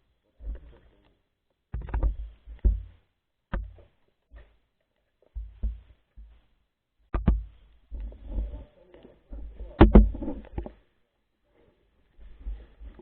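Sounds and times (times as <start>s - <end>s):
muffled knocks and thumps: 1.7s - 4.5s, 5.3s - 6.4s, 7.1s - 8.6s, 9.3s - 10.8s.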